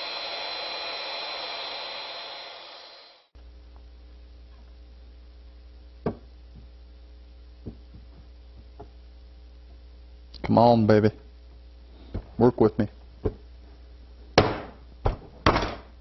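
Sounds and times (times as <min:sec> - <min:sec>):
router running: 0:00.0 - 0:03.4
low steady hum: 0:03.4 - 0:16.0.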